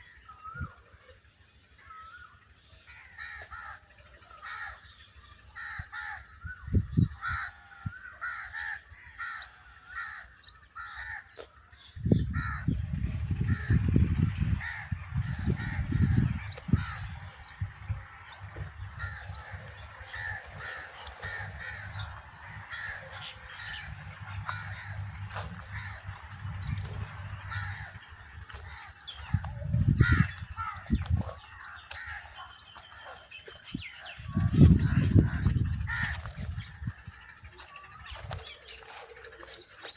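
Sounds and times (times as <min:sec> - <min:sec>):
birds calling: 0:00.0 - 0:39.9
crows cawing: 0:01.8 - 0:39.9
low rumbling: 0:12.0 - 0:37.3.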